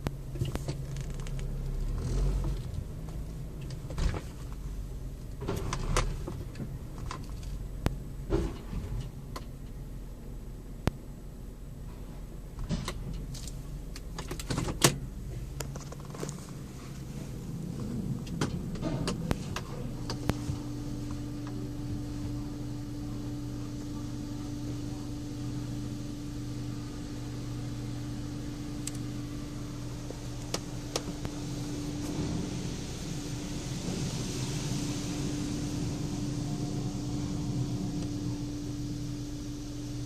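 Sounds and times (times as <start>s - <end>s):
car wash machinery clicks and knocks: 0.0s - 11.0s, 11.8s - 26.2s, 26.8s - 40.0s
steady motor hum: 16.7s - 40.0s.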